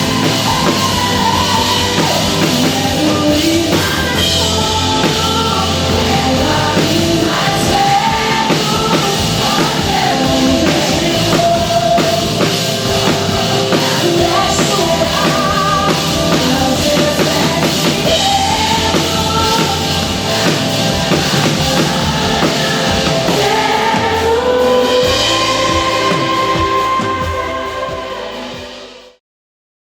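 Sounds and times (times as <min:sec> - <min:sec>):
gospel singing with band: 0:00.0 - 0:29.2.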